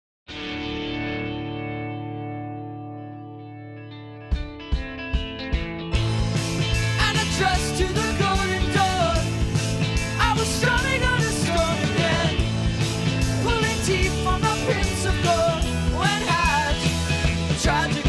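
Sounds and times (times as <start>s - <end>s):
rock music with drum beat: 4.3s - 18.0s
person singing: 6.9s - 9.4s, 10.2s - 12.4s, 13.4s - 18.0s.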